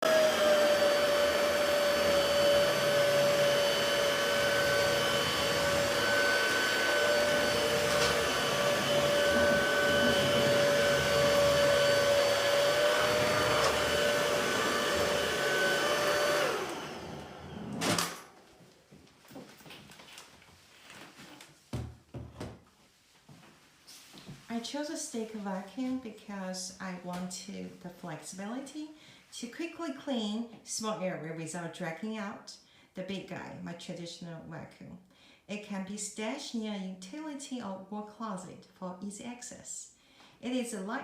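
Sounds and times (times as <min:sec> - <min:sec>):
vacuum motor whining: 0:00.0 - 0:18.3.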